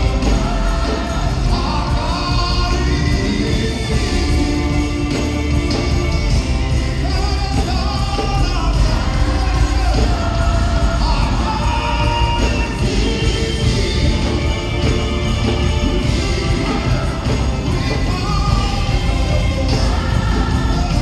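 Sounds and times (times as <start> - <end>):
live gospel band: 0.0 - 21.0
people singing: 0.0 - 21.0.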